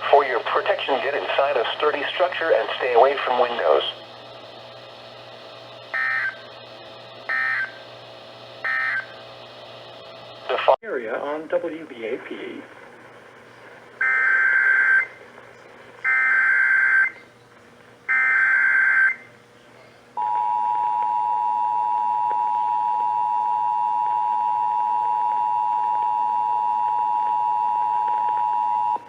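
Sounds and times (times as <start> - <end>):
two-tone attention signal: 6.0 - 6.4, 7.3 - 7.8, 8.6 - 9.1.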